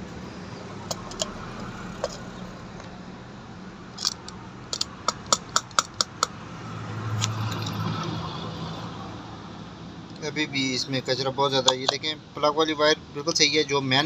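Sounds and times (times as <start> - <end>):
low hum of traffic: 0.0 - 14.0
plastic and metal clicks: 4.0 - 6.3.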